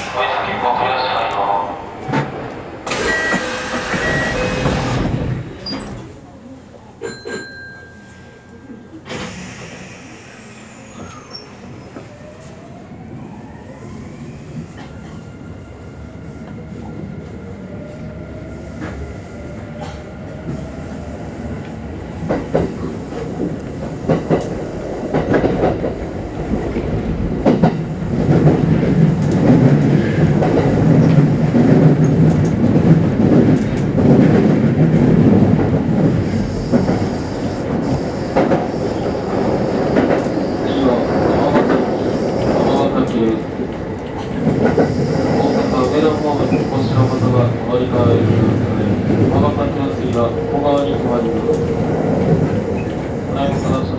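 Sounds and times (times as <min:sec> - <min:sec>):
train running rumble: 0:00.0 - 0:06.4, 0:19.8 - 0:53.9
electric train motor whine: 0:02.8 - 0:05.8, 0:35.3 - 0:47.5.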